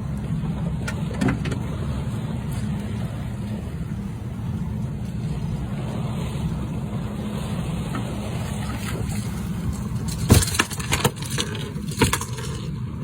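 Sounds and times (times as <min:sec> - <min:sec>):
low engine drone: 0:00.0 - 0:13.0
sharp knocks and clatters: 0:09.6 - 0:12.7.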